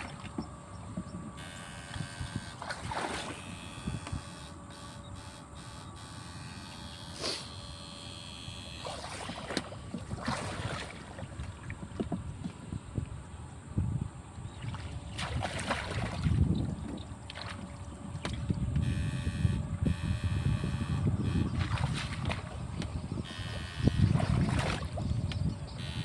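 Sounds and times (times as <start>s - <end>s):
water splashing and sloshing: 0.0s - 4.7s, 8.5s - 18.9s, 20.4s - 26.0s.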